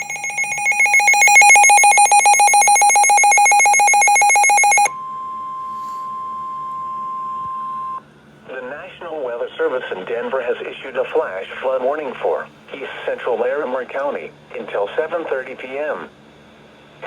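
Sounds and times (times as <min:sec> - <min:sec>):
pulsing two-tone attention signal: 0:00.0 - 0:08.0
steady single warning tone: 0:00.0 - 0:08.0.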